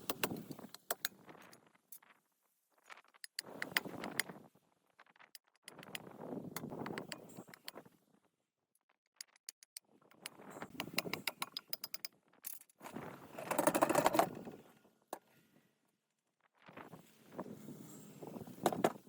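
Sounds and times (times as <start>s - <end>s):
metal parts and tools clinking: 9.2s - 14.6s.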